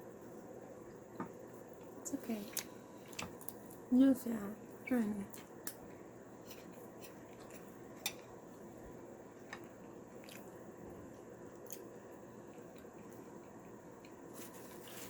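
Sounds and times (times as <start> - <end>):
person chewing: 6.4 - 8.4, 9.6 - 10.6.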